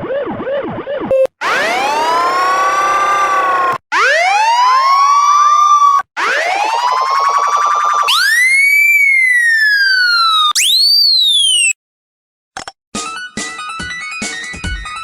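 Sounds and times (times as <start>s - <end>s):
police siren wail sweeps: 0.0s - 10.6s
higher siren tone: 0.0s - 11.7s.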